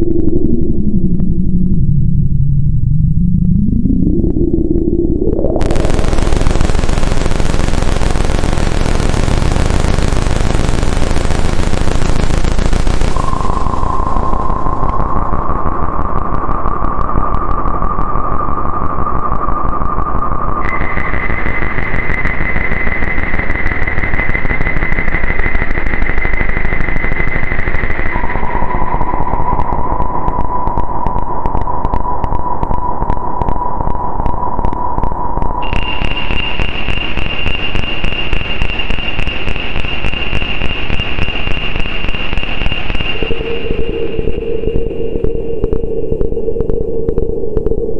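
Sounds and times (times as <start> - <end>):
low rumbling drone: 0.0 - 19.6, 42.6 - 47.9
harsh synthesizer noise with crackling: 2.7 - 47.9
steady high synth tone: 3.7 - 16.9, 40.2 - 47.9
rapid ticking: 5.6 - 16.2.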